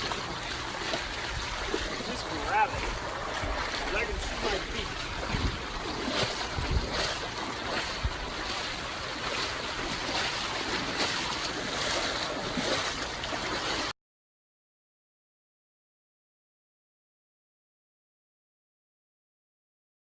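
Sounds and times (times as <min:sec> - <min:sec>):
water rushing: 0:00.0 - 0:13.9
wind thumps on microphone: 0:02.9 - 0:07.2.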